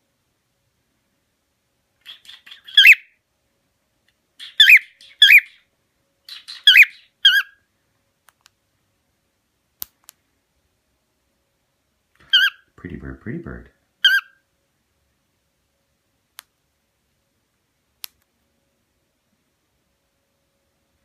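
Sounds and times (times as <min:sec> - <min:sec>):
cockatiel whistled chirps: 0:02.0 - 0:03.2, 0:04.4 - 0:05.6, 0:06.3 - 0:07.6, 0:12.2 - 0:12.7, 0:14.0 - 0:14.4
faint click: 0:08.2 - 0:08.6, 0:16.3 - 0:16.6, 0:18.0 - 0:18.3.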